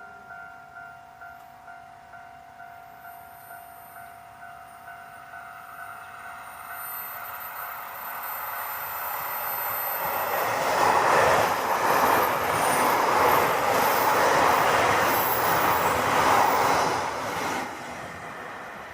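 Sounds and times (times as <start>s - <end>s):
crossing warning bell ringing: 0.0s - 15.9s
train wheels over rails: 6.1s - 18.9s.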